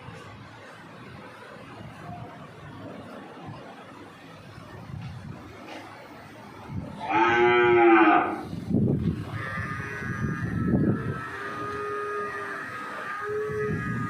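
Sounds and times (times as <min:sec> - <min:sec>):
cow mooing: 0:07.0 - 0:08.5, 0:09.3 - 0:14.0.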